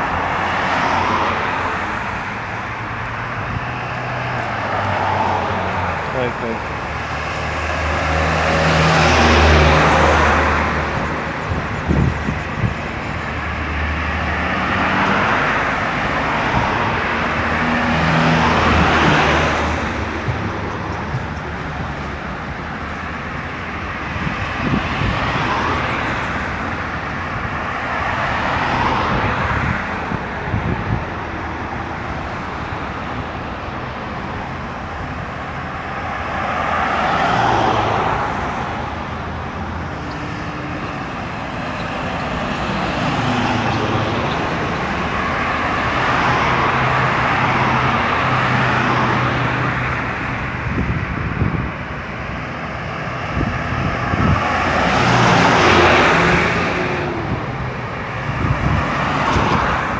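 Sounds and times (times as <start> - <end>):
constant traffic hum: 0.0 - 59.9
heavy vehicle engine: 0.0 - 59.9
vehicles passing on highway: 0.0 - 59.9.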